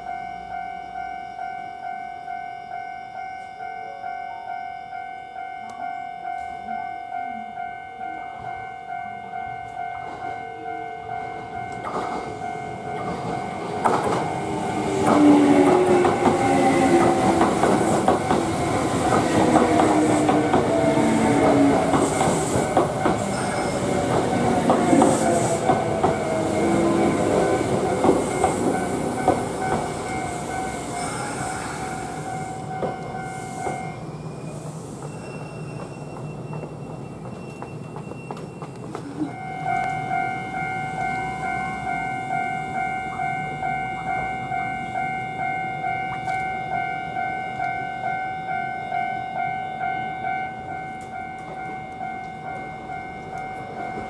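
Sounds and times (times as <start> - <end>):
level crossing alarm ringing: 0.0 - 34.5, 35.1 - 54.0
train wheels clattering: 11.2 - 41.2.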